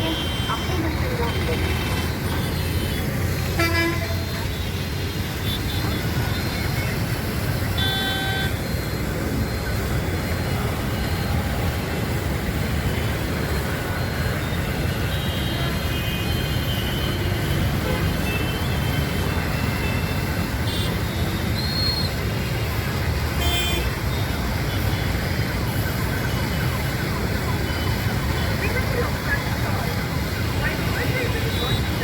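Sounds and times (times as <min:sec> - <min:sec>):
road traffic noise: 0:00.0 - 0:32.0.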